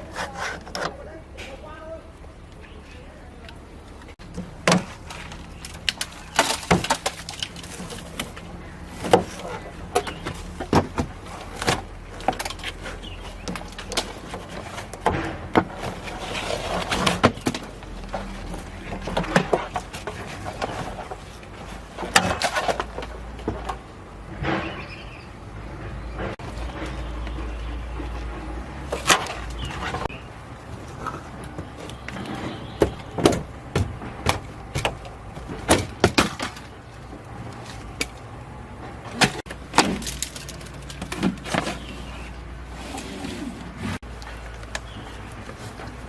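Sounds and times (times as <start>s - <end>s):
knocks and clatter: 30.8s - 42.0s.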